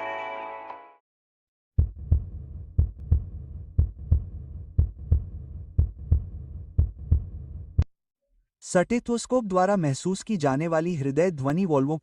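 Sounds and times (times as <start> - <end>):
heartbeat through stethoscope: 1.8 - 7.9.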